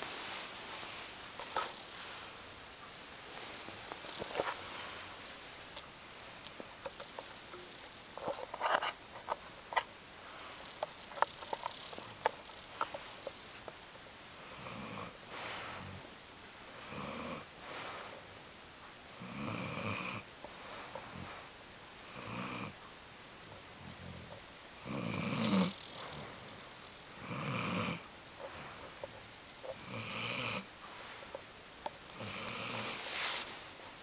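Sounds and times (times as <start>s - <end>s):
dog snoring: 14.4s - 16.1s, 16.7s - 18.1s, 19.1s - 22.8s, 23.8s - 28.9s, 29.7s - 31.3s, 32.1s - 33.4s.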